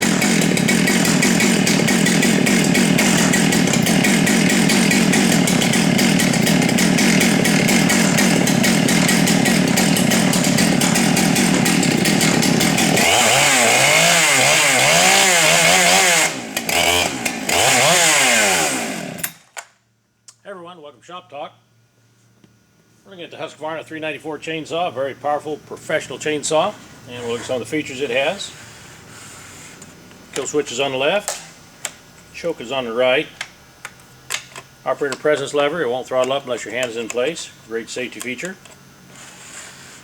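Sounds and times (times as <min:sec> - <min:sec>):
chainsaw revving: 0:00.0 - 0:19.5.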